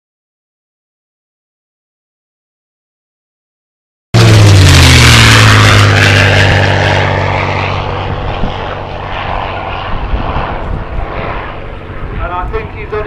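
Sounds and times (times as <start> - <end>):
model plane engine passing: 4.2 - 13.0.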